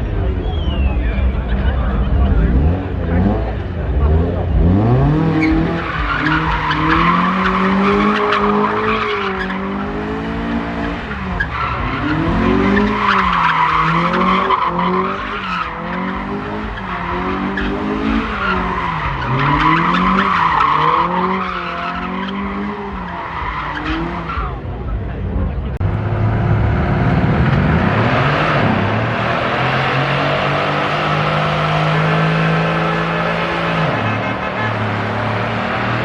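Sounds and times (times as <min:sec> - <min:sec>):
car engine revving: 0:00.0 - 0:36.0
tyres screeching: 0:05.1 - 0:24.6.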